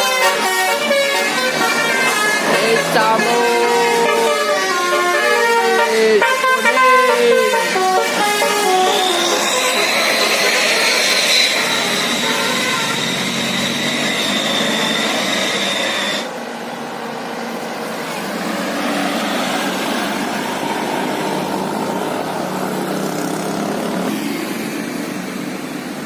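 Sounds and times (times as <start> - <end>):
bus engines and road noise: 0.0 - 26.0
high-pitched tone: 2.3 - 10.3.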